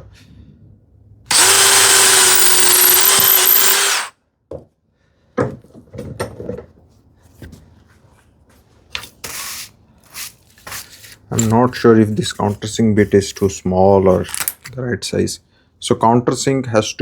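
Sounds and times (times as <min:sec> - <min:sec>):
power drill drilling into wood: 0:01.3 - 0:04.1.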